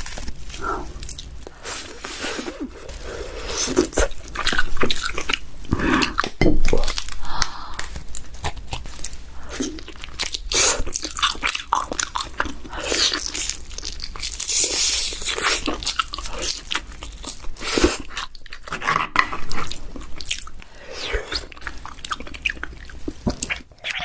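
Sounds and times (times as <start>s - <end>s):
chewing: 0.0s - 24.0s
crab shell crunching: 0.0s - 24.0s.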